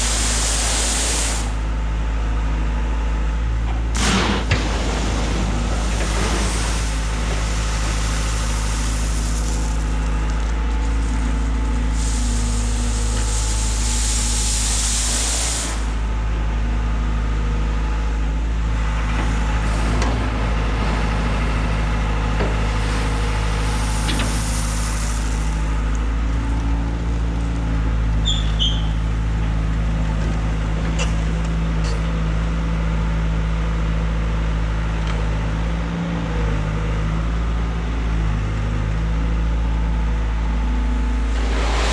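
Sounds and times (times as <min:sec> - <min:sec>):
hiss: 0:00.0 - 0:01.7, 0:04.0 - 0:16.1, 0:21.0 - 0:26.0, 0:41.2 - 0:41.9
diesel engine running: 0:00.0 - 0:28.2, 0:36.2 - 0:41.9.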